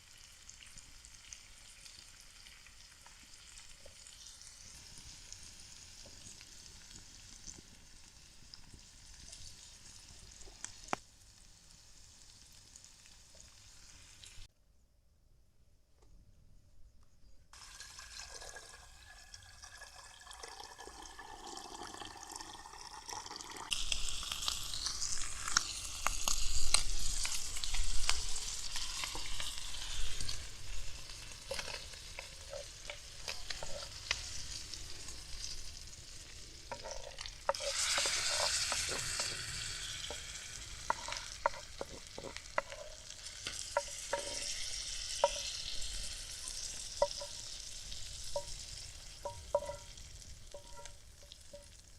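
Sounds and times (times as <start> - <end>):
shrimp sizzling in butter: 0.0 - 14.5, 23.6 - 51.9
utensil clicking against pan: 40.9 - 44.6.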